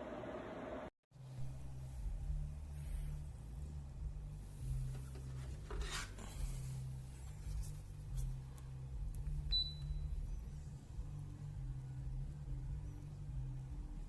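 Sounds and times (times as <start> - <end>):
tower fan humming: 0.0 - 0.9.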